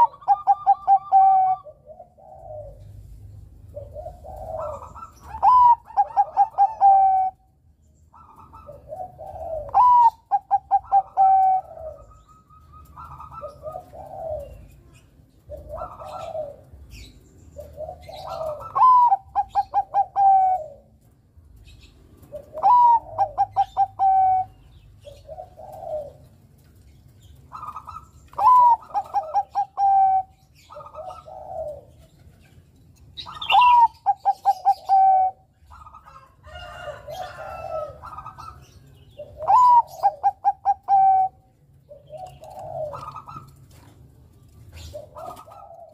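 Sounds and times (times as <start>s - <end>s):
zebra dove cooing: 0.0s - 3.1s, 3.7s - 7.5s, 8.1s - 14.8s, 15.4s - 21.0s, 22.2s - 26.4s, 27.5s - 32.3s, 33.2s - 43.9s, 44.7s - 45.9s.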